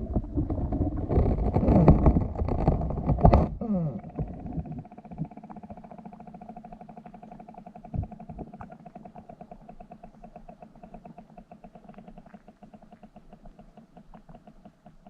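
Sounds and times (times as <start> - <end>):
muffled underwater knocks and gurgling: 0.0 - 15.0
fast-pulsing hum: 3.6 - 15.0.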